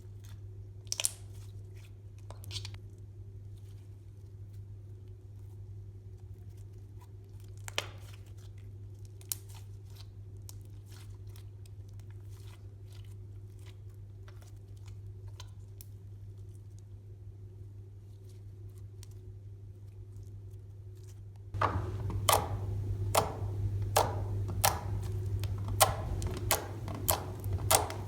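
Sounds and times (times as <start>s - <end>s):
steady low hum: 16.2s - 28.0s
slime crackling and clicking: 22.1s - 28.0s
sharp slime pops: 22.3s - 28.0s.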